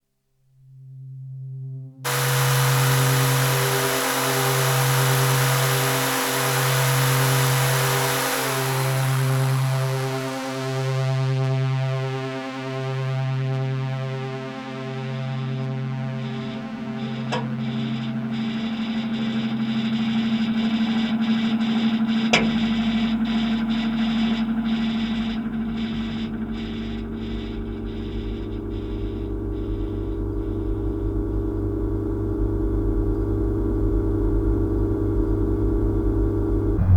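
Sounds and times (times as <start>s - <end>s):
electric fan humming: 2.1s - 9.2s, 15.4s - 31.4s.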